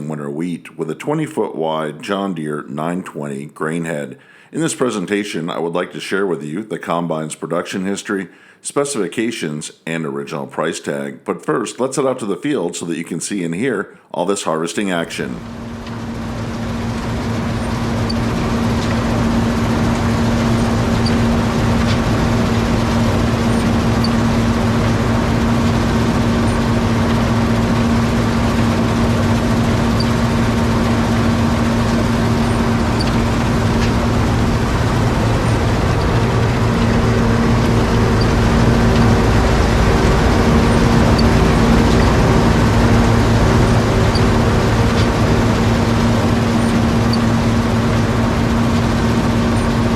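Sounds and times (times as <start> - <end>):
combine harvester engine drone: 15.0 - 49.9.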